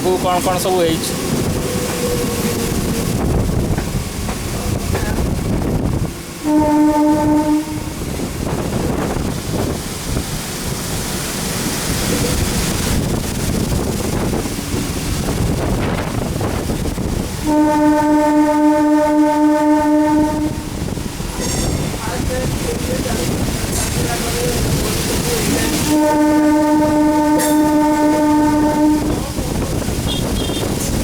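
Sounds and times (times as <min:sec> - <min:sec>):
train rumbling along track: 0:00.0 - 0:31.0
train horn: 0:06.4 - 0:08.2, 0:17.4 - 0:20.9, 0:25.7 - 0:29.3, 0:30.0 - 0:30.9.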